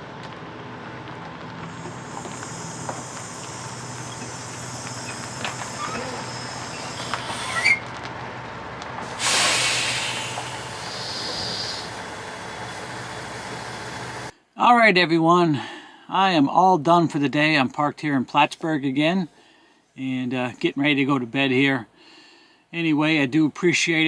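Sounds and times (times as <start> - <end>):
steady low hum: 0.0 - 9.2
air brakes hissing: 1.7 - 7.9, 9.0 - 14.3.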